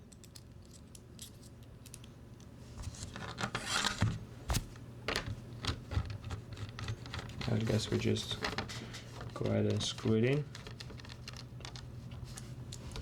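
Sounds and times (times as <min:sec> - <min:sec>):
parts scraping and rattling: 0:05.1 - 0:13.0
plastic parts clicking: 0:05.1 - 0:13.0.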